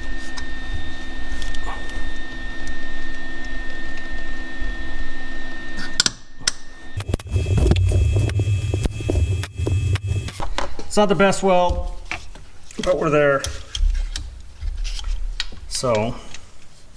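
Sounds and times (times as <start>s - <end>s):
sharp clicks: 7.0s - 10.4s
steady electrical hum: 7.0s - 10.4s
welder buzzing with crackling: 7.0s - 10.4s.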